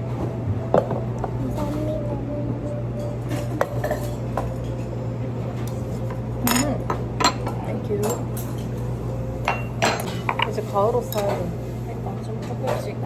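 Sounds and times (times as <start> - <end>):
low room hum: 0.0 - 13.0
cutlery clinking against dishes: 3.3 - 4.9, 5.6 - 11.5.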